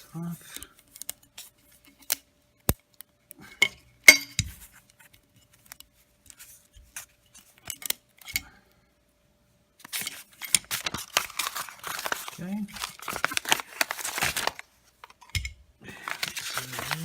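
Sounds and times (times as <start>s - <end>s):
rustling: 9.9s - 15.2s, 15.9s - 17.0s.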